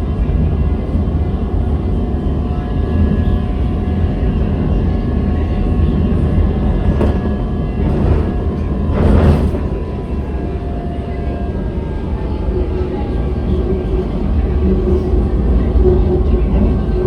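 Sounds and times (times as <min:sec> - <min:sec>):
light rail vehicle rumble: 0:00.0 - 0:17.0.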